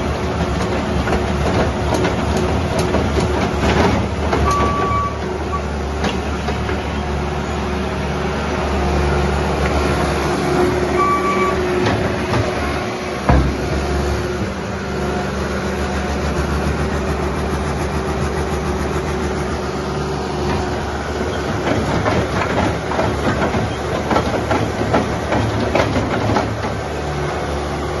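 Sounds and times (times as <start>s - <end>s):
loader clanks and knocks: 0.0s - 7.4s, 9.5s - 14.9s, 19.5s - 28.0s
diesel engine running: 0.0s - 28.0s.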